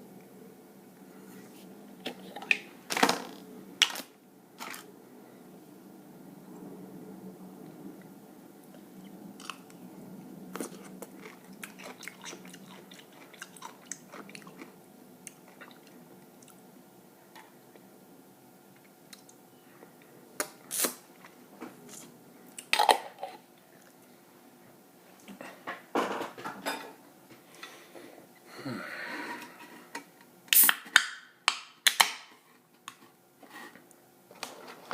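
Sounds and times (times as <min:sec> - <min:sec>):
close chewing and biting: 0:10.5 - 0:16.6.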